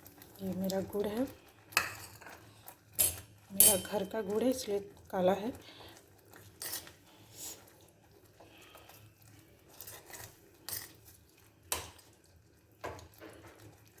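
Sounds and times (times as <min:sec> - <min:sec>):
spoon scraping and knocking in pan: 0:01.8 - 0:02.4, 0:03.0 - 0:04.1.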